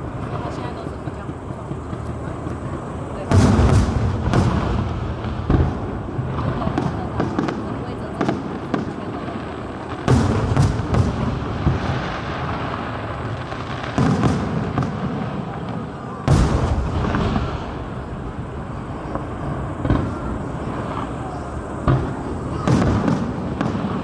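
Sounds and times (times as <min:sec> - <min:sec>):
fireworks crackle and rumble: 0:00.0 - 0:24.0
fireworks shells bursting: 0:10.0 - 0:24.0.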